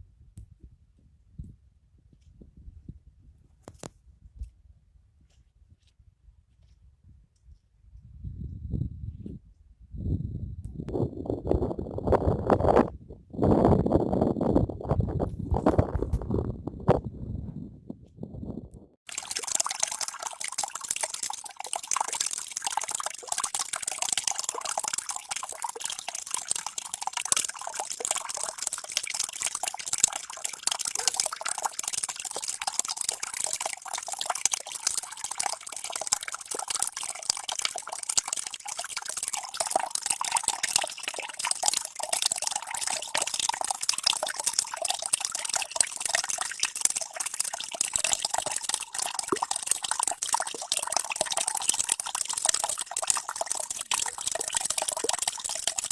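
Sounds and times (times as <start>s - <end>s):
water running and splashing: 19.1s - 55.9s.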